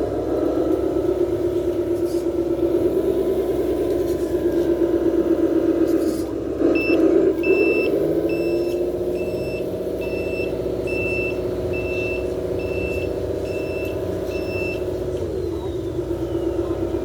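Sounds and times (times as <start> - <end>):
motor hum: 0.0 - 17.0
reversing beeps: 6.7 - 17.0.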